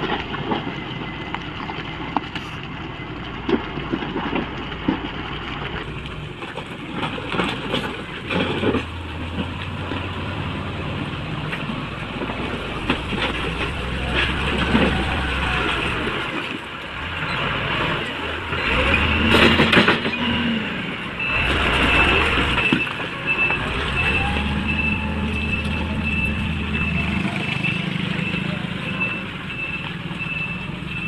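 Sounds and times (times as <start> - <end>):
diesel engine running: 0.0 - 31.0
loud rush of noise: 9.8 - 19.8, 20.6 - 29.1
high-pitched beeper: 21.3 - 31.0.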